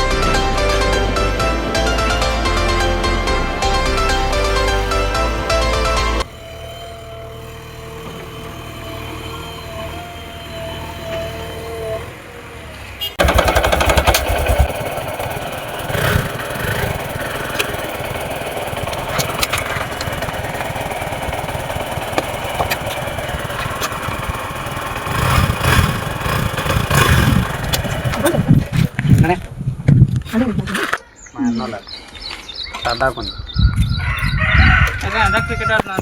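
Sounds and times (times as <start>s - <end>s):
motorcycle engine running: 0.0s - 10.3s, 13.0s - 29.2s.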